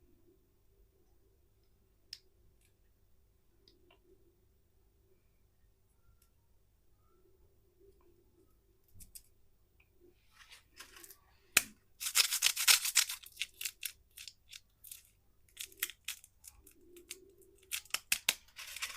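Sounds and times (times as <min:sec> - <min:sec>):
candy wrapper crinkling: 0:12.0 - 0:18.9.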